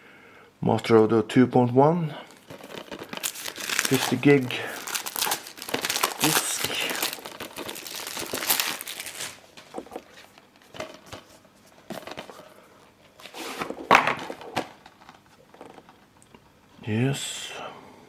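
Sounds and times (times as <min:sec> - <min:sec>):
plastic shrink wrap tearing: 0:02.3 - 0:09.4.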